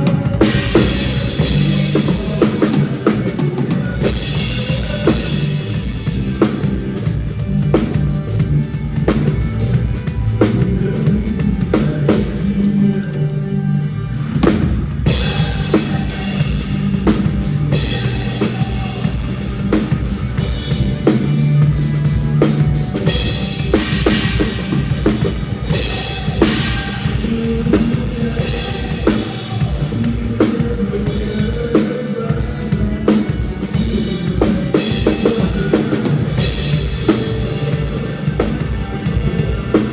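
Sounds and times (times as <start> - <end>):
bass line: 0.0 - 39.9
drum kit playing: 0.0 - 39.9.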